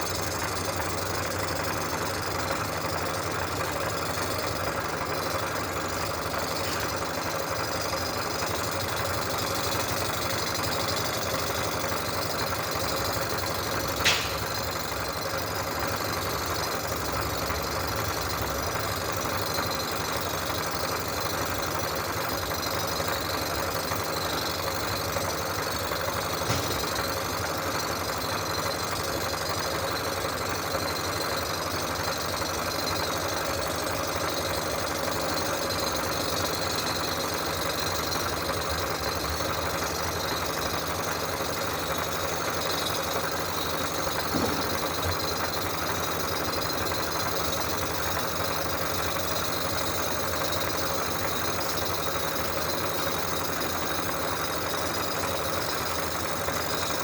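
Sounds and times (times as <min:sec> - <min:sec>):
surfacing machine running: 0:23.5 - 0:51.8.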